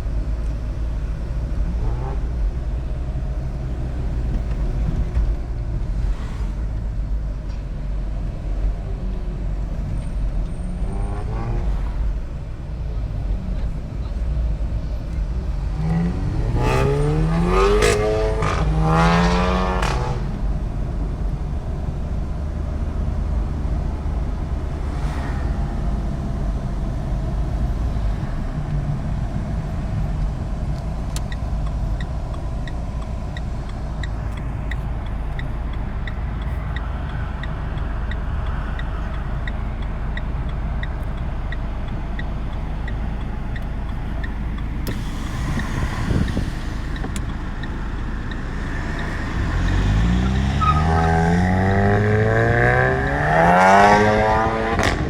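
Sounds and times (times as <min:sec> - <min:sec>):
car engine revving: 0:00.0 - 0:55.0
light ticking: 0:30.0 - 0:50.5.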